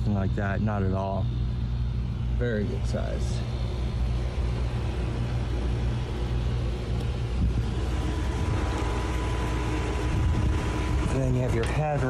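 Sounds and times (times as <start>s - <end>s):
air conditioner humming: 0.0s - 12.0s.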